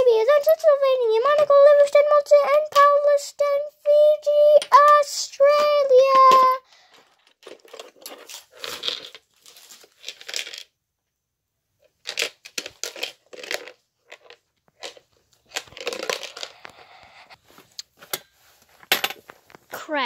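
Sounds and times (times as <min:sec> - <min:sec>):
hard objects rustling and knocking: 0:05.6 - 0:10.8, 0:11.8 - 0:19.8.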